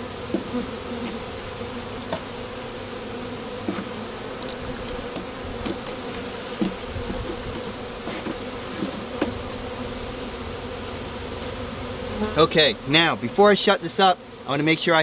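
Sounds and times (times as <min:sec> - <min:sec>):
honeybees buzzing: 0:00.0 - 0:15.0.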